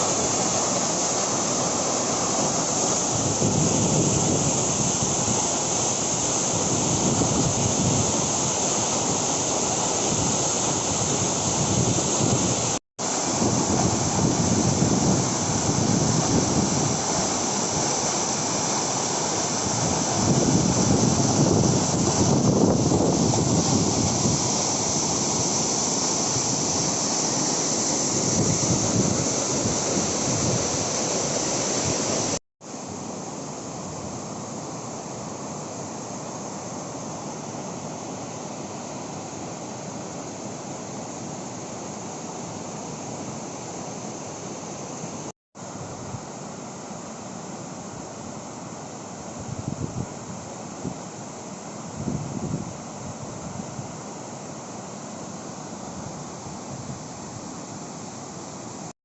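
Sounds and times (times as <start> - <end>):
waterfall roaring: 0.0 - 32.4.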